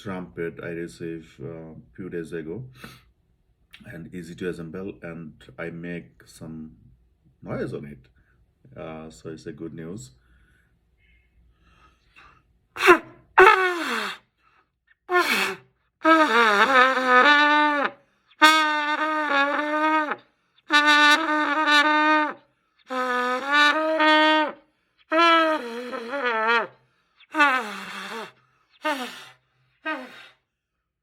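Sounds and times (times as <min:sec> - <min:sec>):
person breathing: 0:02.8 - 0:03.1, 0:10.2 - 0:12.5
unsteady trumpet notes: 0:12.8 - 0:14.2, 0:15.1 - 0:26.7, 0:27.3 - 0:30.2.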